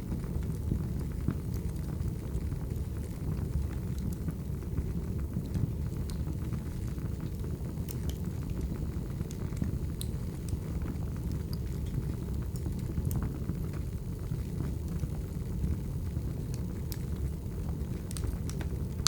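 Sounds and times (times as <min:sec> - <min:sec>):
wood fire rumbling: 0:00.0 - 0:19.0
logs crackling and popping: 0:00.2 - 0:19.0.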